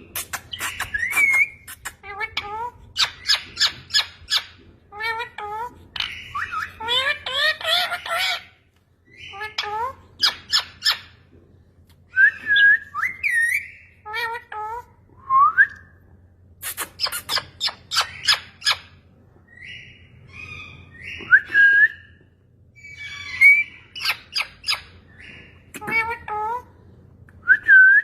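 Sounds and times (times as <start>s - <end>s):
parrot whistles and squawks: 0.0s - 8.5s, 12.2s - 14.9s, 16.6s - 18.9s, 22.8s - 26.7s.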